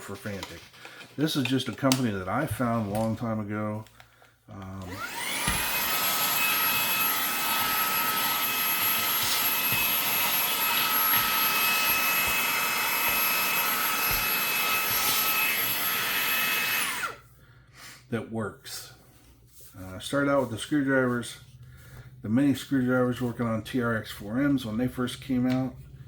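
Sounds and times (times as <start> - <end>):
vacuum cleaner motor whining: 4.6 - 17.2.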